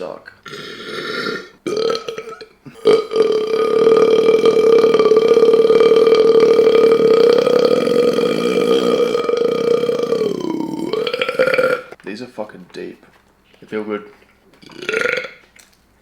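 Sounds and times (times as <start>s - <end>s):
man burping: 0.4s - 12.0s, 14.6s - 15.4s.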